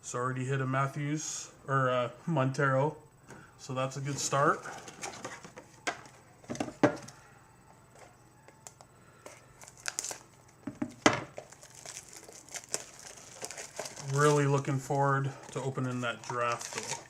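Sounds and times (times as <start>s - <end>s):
card pack wrapper crinkling and tearing: 8.6s - 10.4s, 11.4s - 14.8s, 15.5s - 17.0s.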